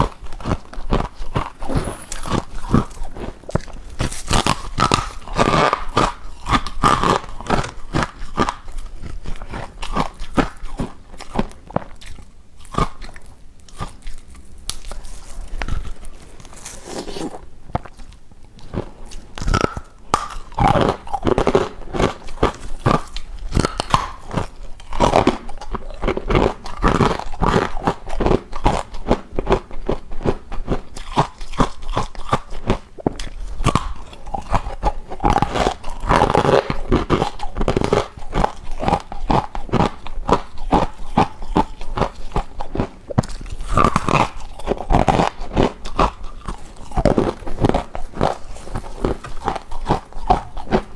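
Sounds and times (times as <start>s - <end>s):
person crunching ice: 14.7s - 17.4s.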